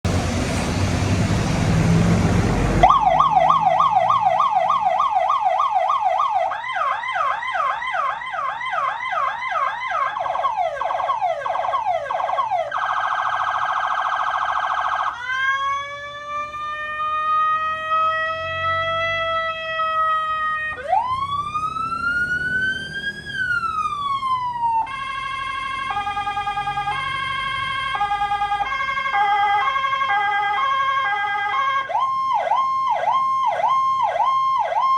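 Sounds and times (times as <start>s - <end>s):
electronic siren: 2.8s - 34.9s.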